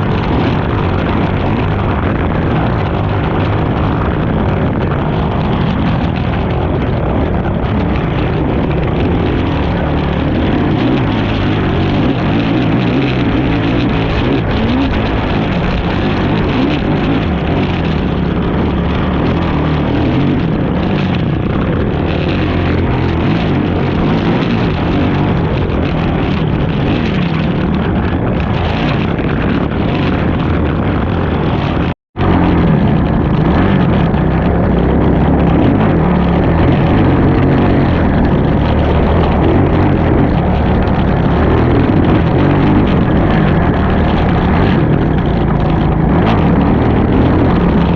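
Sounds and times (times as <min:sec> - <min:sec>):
atv engine running hard: 0:00.0 - 0:47.9.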